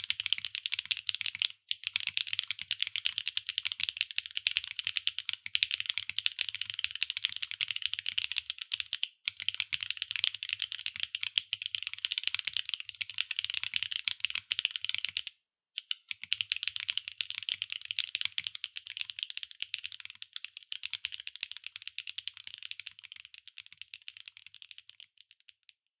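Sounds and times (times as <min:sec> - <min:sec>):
typing on mechanical keyboard: 0:00.0 - 0:25.8.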